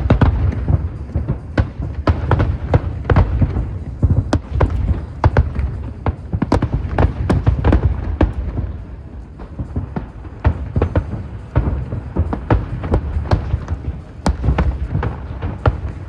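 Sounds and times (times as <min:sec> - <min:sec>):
fireworks bangs: 0:00.0 - 0:16.0.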